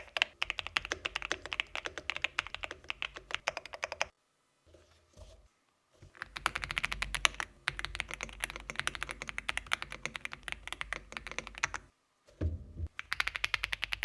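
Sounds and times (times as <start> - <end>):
rapid mechanical keyboard typing: 0.0 - 4.1, 6.2 - 11.9, 12.9 - 14.0.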